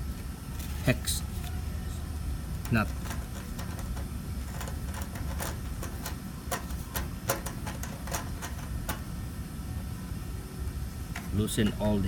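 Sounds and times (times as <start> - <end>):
low steady hum: 0.0 - 12.0
allen key clicking on screws: 2.6 - 9.1.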